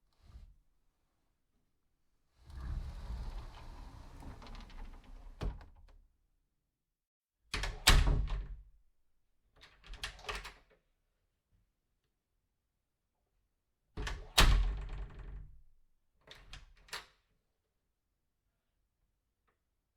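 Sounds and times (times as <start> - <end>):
door scraping and clicking: 2.4 - 5.7.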